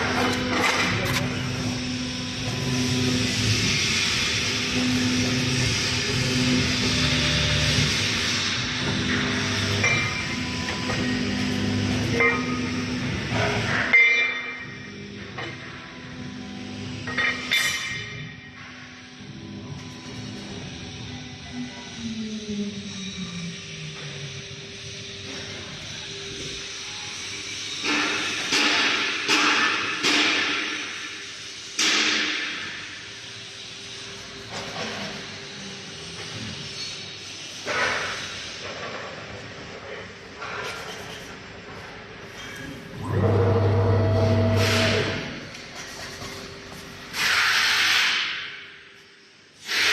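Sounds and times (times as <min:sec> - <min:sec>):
compressed air hissing: 0:47.1 - 0:48.5, 0:49.6 - 0:49.9.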